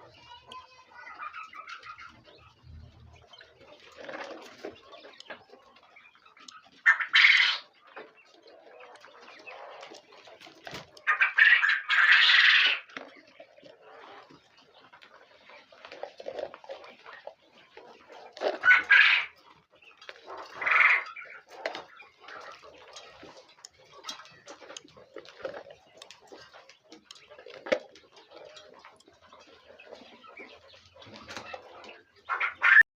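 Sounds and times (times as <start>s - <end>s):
birds calling: 0.0s - 32.8s
chicks peeping and chirping: 0.0s - 32.9s
small noises: 0.0s - 32.9s.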